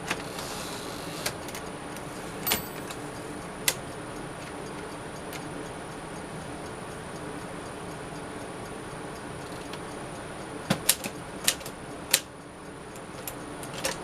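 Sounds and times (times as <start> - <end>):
steady low hum: 0.0 - 14.0
manual typewriter clacks: 2.4 - 3.0.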